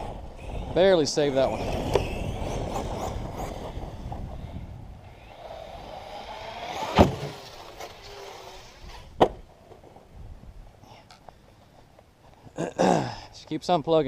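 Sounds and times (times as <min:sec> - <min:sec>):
electric motor whining: 0:00.0 - 0:09.2.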